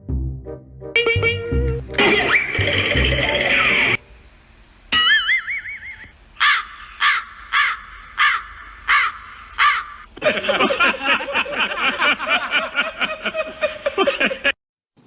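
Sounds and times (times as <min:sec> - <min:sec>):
high-pitched chattering laugh: 0:01.1 - 0:03.2, 0:05.0 - 0:06.1
crow cawing: 0:06.4 - 0:10.1.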